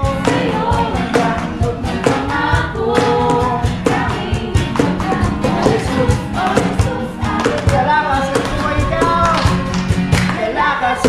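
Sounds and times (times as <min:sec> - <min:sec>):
steady drum beat: 0:00.0 - 0:10.4.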